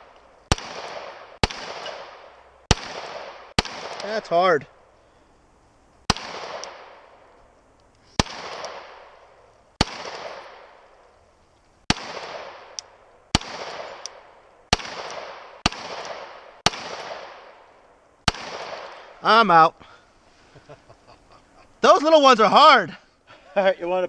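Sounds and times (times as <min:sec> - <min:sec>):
gunshots with long echo: 0:00.0 - 0:04.9, 0:06.1 - 0:07.3, 0:08.2 - 0:11.0, 0:11.9 - 0:19.2.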